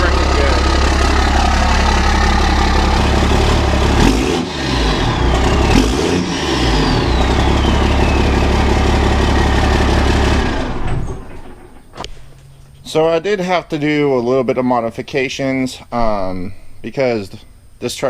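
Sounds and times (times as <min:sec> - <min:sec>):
diesel truck engine rumbling: 0:00.0 - 0:12.0
turbo whistle: 0:06.4 - 0:09.7.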